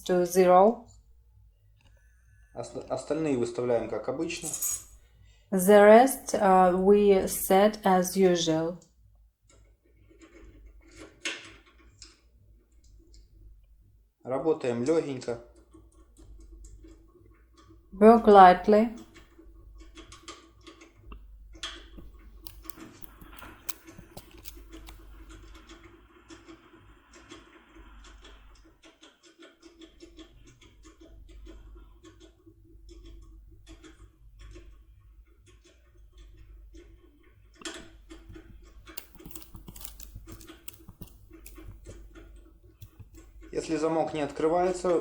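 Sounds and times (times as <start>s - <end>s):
faint metallic clicks of lock picking: 21.6s - 25.1s, 37.6s - 41.8s.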